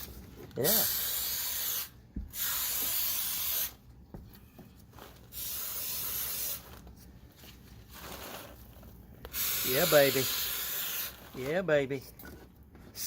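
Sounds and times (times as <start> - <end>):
spray foam gun hissing: 0.7 - 3.8, 5.3 - 6.6, 9.3 - 11.2.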